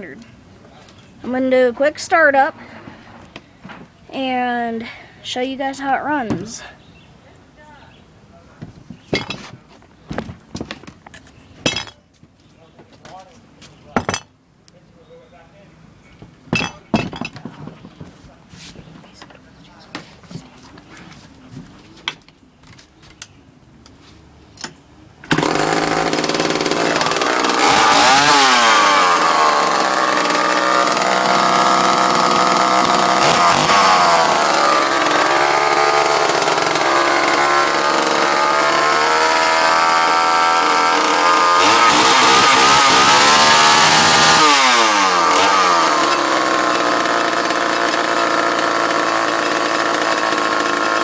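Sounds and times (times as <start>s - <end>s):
chainsaw engine revving: 25.3s - 51.0s.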